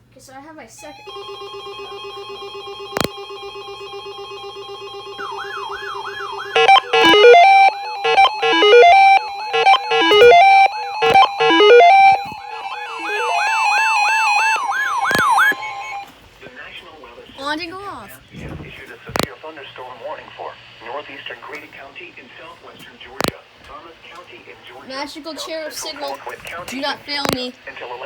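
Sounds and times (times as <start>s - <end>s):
siren wail: 1.0s - 16.1s
stepped beeping tones: 1.0s - 16.1s
two-tone alert tone: 5.0s - 16.1s.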